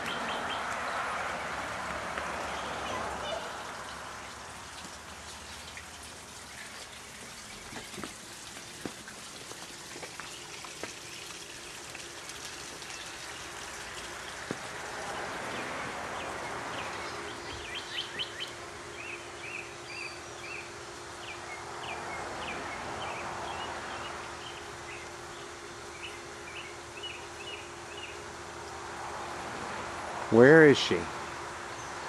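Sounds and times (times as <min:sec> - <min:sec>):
bird chirping: 0:00.0 - 0:01.6, 0:15.8 - 0:28.2.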